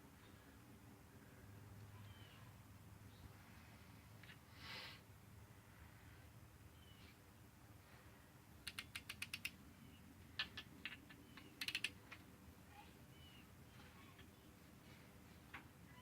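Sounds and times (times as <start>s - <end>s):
ratchet wrench clicking: 8.7s - 9.5s, 11.6s - 11.9s.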